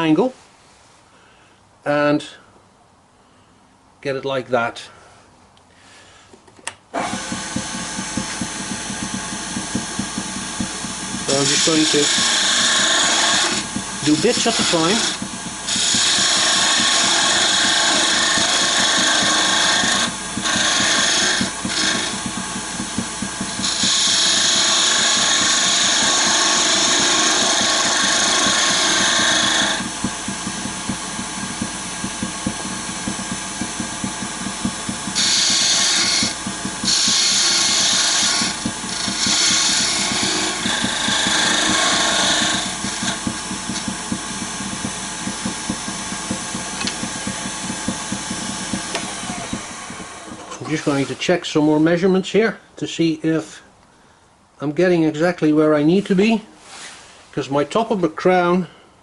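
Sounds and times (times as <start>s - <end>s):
wood lathe running: 7.0s - 51.3s
tool scraping wood: 7.0s - 51.4s.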